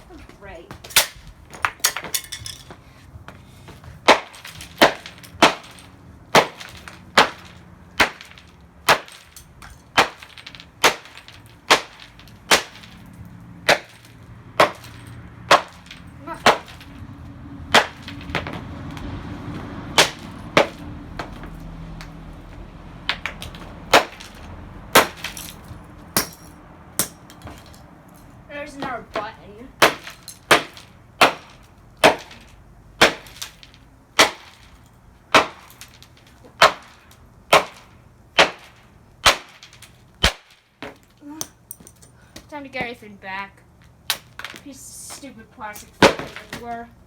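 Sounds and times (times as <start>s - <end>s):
hammer smashing plastic: 4.0s - 13.0s, 13.6s - 17.0s, 17.7s - 18.6s, 19.9s - 21.4s, 23.1s - 27.8s, 28.8s - 41.1s.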